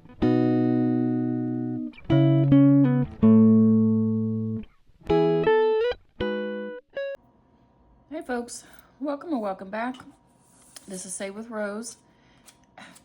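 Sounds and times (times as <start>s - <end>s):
plucked guitar chords: 0.0s - 7.2s.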